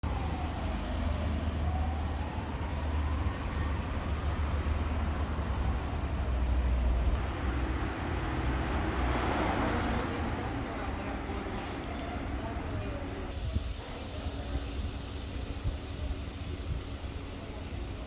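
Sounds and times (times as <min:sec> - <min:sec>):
car engine low rumble: 0:00.0 - 0:18.0
faint turbo whine: 0:12.5 - 0:18.0.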